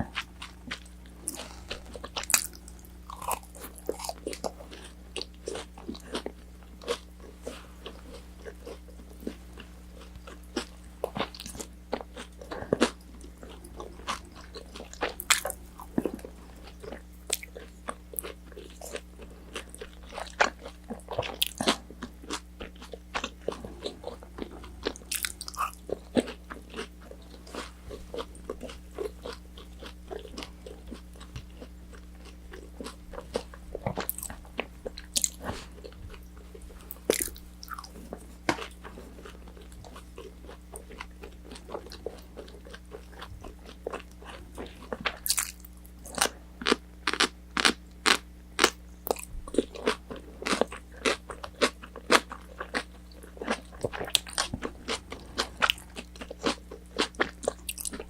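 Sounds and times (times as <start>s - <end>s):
crispy food crunching: 0.0s - 58.0s
faint low hum: 0.0s - 58.0s
wet chewing clicks: 0.0s - 58.0s.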